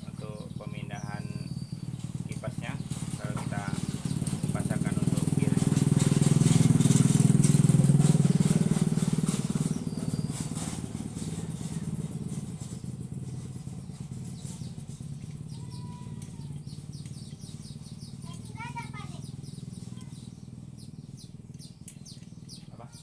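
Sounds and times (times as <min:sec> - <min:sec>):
vehicle engine passing by: 0:00.0 - 0:21.8.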